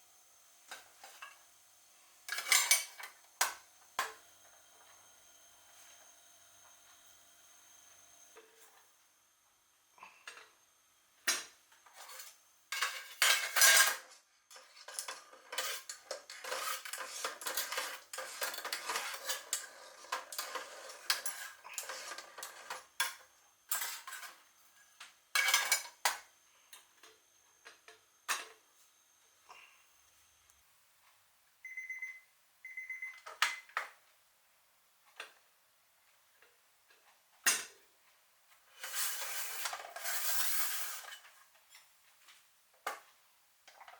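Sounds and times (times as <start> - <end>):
utensil scraping metal tin: 15.5 - 22.5, 38.8 - 41.2
short beeps: 31.6 - 33.6.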